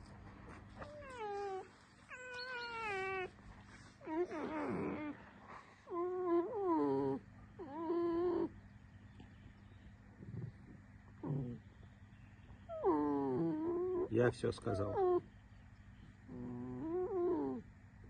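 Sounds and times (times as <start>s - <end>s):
fox whining squeals: 0.9s - 3.3s, 12.7s - 15.3s.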